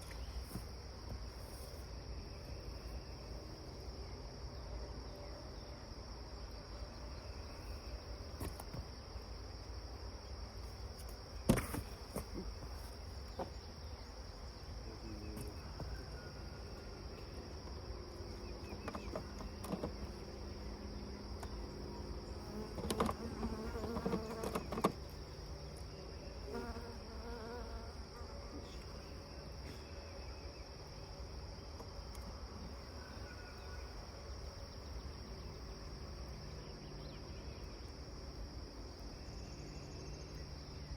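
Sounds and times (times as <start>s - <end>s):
crickets trilling: 0.0s - 40.9s
honeybees buzzing: 18.2s - 28.2s.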